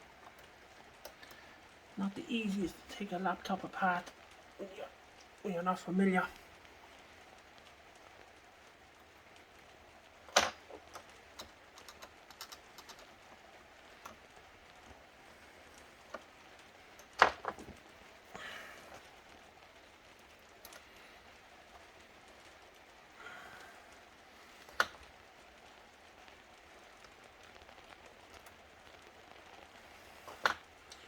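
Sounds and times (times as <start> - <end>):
small clicks and taps: 6.5 - 18.0, 23.9 - 31.0.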